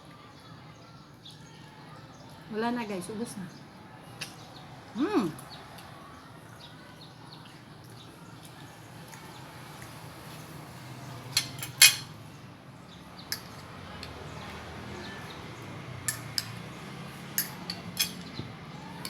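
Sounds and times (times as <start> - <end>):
dishes and cutlery clinking: 11.3 - 12.2, 13.3 - 14.2, 16.0 - 19.0.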